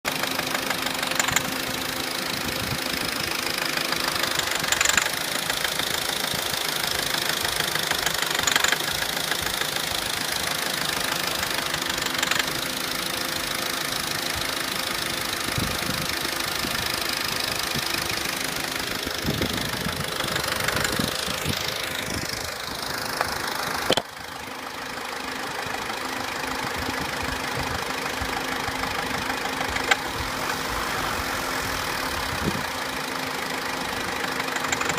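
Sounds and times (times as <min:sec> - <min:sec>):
car engine idling: 0:00.0 - 0:34.9
engine tapping and rattling: 0:00.0 - 0:34.9
sharp clicks: 0:01.0 - 0:01.6, 0:04.4 - 0:05.1, 0:34.5 - 0:34.9.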